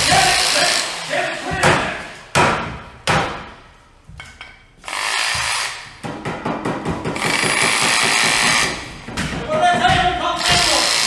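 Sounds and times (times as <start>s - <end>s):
power tool whirring: 0.0s - 1.1s, 4.8s - 6.0s, 10.4s - 11.0s.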